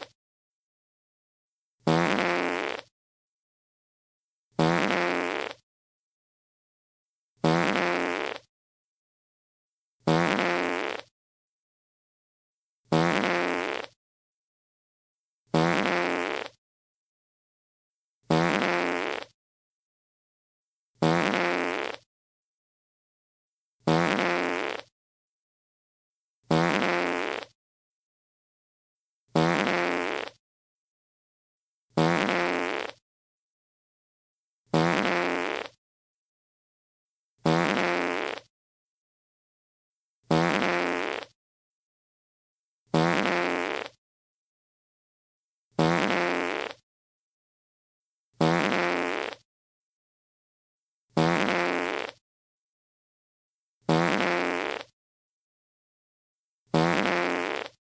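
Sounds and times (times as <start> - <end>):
buzzy fart sound: 1.8 - 2.9, 4.5 - 5.6, 7.4 - 8.5, 10.0 - 11.2, 12.9 - 14.0, 15.5 - 16.6, 18.2 - 19.4, 21.0 - 22.1, 23.8 - 25.0, 26.4 - 27.6, 29.3 - 30.4, 31.9 - 33.0, 34.7 - 35.8, 37.4 - 38.5, 40.3 - 41.4, 42.9 - 44.0, 45.8 - 46.8, 48.4 - 49.5, 51.1 - 52.2, 53.8 - 55.0, 56.7 - 57.8.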